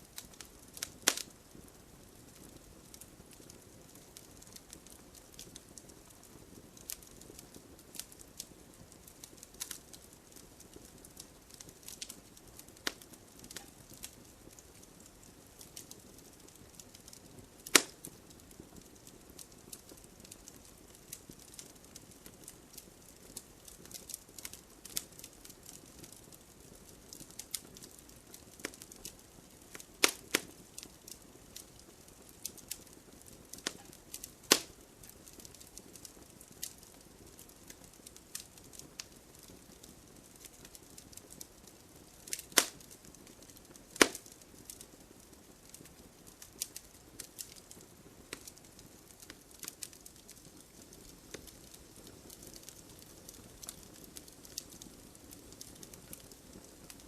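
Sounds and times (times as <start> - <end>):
wood fire crackling: 0.0 - 57.0
loud sharp fire snaps: 0.1 - 57.0.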